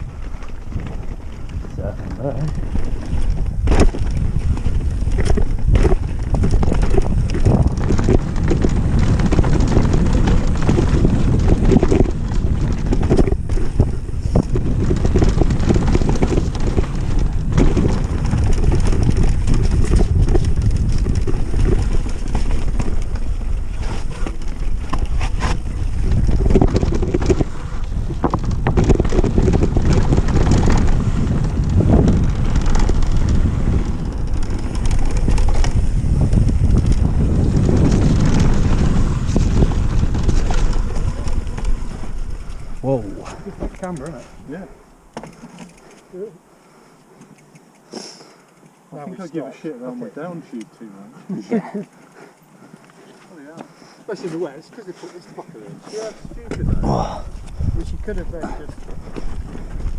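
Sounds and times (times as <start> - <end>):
bike knocks and rattles: 0.0 - 44.2, 56.2 - 59.9
wind buffeting microphone: 0.0 - 45.1, 56.0 - 59.9
tyres rumbling on rough trail: 0.0 - 50.5, 51.1 - 59.9.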